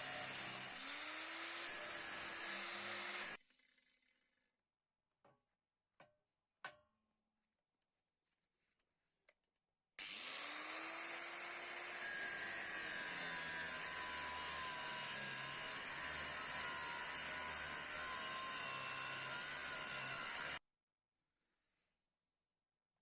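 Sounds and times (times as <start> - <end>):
electric power tool whining: 0.0 - 3.4, 10.0 - 20.6.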